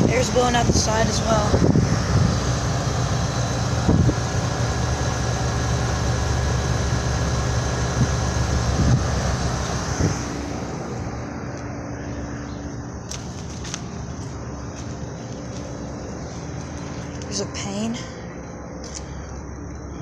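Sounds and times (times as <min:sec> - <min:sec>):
compressor hum: 0:00.0 - 0:20.0
fan air noise: 0:00.0 - 0:20.0.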